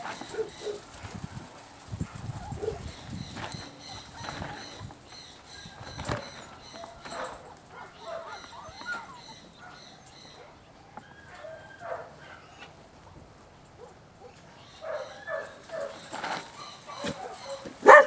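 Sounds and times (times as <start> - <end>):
puppies whining and yipping: 0.0 - 0.9, 2.4 - 12.7.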